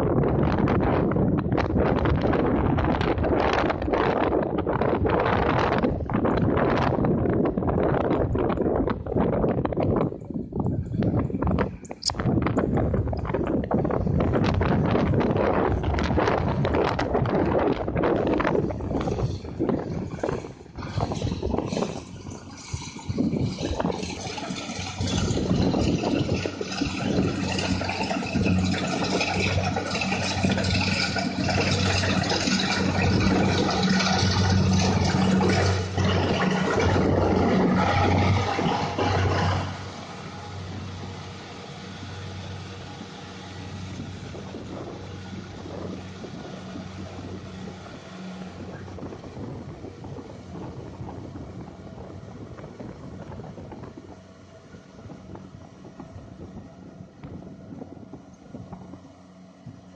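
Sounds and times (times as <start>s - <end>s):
rough churning noise: 0.0s - 59.9s
farm machine engine running: 0.2s - 59.9s
mechanical clatter: 0.4s - 43.0s.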